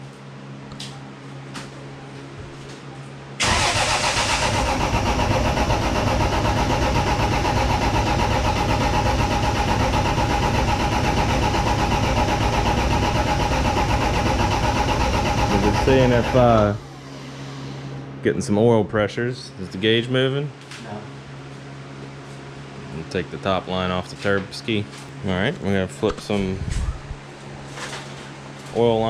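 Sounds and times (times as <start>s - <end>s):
engine cranking on starter: 3.4s - 16.8s.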